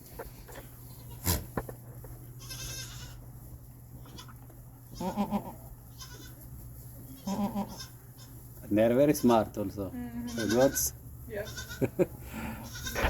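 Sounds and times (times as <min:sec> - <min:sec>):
steady low hum: 0:00.0 - 0:13.0
goat bleating: 0:00.9 - 0:01.6, 0:02.4 - 0:03.2, 0:04.0 - 0:06.4, 0:07.1 - 0:08.4, 0:09.1 - 0:13.0.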